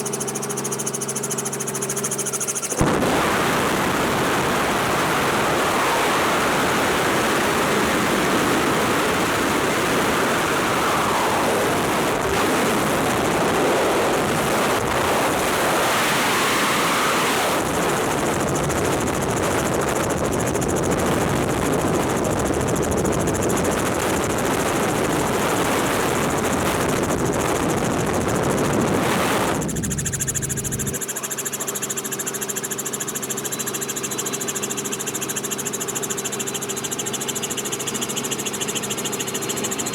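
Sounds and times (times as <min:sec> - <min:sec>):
helicopter engine and rotor noise: 0:00.0 - 0:39.9
heavy wind rush: 0:02.7 - 0:31.0.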